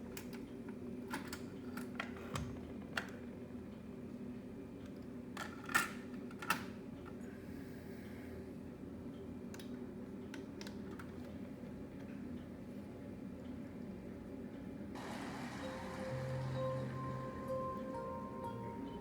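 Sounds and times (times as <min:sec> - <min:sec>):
low hum: 0:15.0 - 0:19.0.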